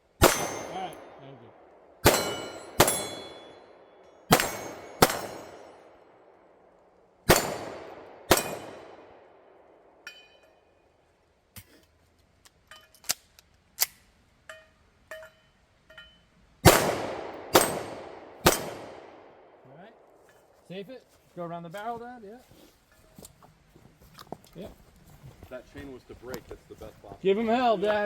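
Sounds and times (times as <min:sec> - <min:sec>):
gunshots with echoing tails: 0:00.1 - 0:10.0, 0:16.6 - 0:20.2.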